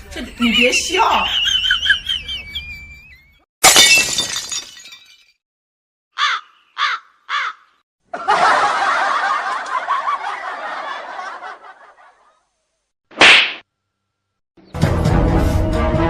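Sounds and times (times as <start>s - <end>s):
canned group laughter: 0.2s - 3.3s, 8.1s - 12.5s
crow caws: 6.1s - 7.8s.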